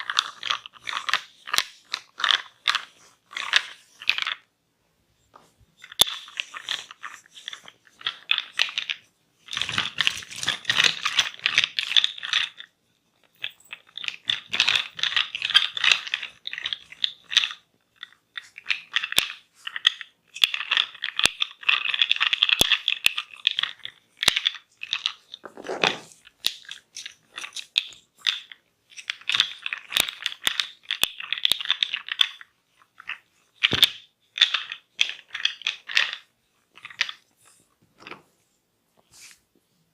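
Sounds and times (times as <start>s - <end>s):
crackling scratching on hair: 39.0s - 39.5s.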